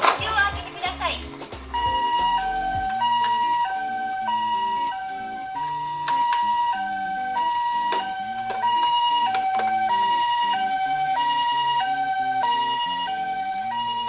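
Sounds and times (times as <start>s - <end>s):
toy car clicks: 0.0s - 3.4s
toy ambulance two-tone siren: 0.0s - 14.0s.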